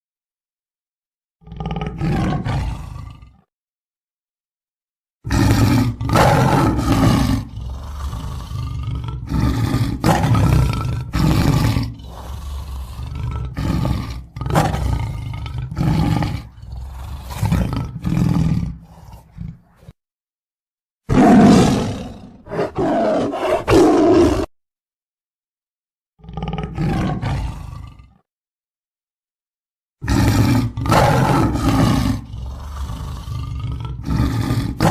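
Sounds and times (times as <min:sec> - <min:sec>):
tiger roaring and growling: 0:01.4 - 0:03.5, 0:05.3 - 0:20.0, 0:21.1 - 0:24.5, 0:26.2 - 0:28.2, 0:30.0 - 0:34.9.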